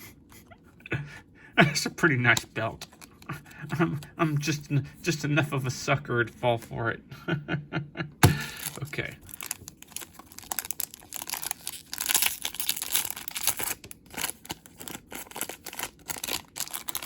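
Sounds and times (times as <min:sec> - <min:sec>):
packaging crinkling and tearing: 0:02.3 - 0:03.8, 0:08.4 - 0:17.0.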